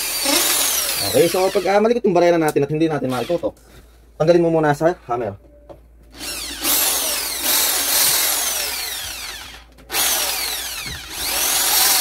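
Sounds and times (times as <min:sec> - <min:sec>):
electric drill boring into wall: 0:00.0 - 0:01.7, 0:06.2 - 0:12.0.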